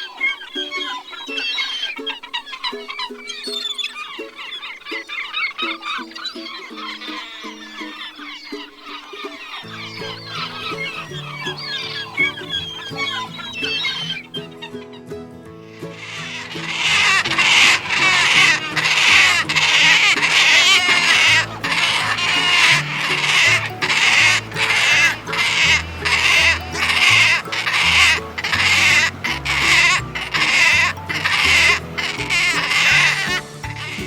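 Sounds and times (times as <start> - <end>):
background music: 0.0 - 34.0
goats bleating: 15.7 - 34.0.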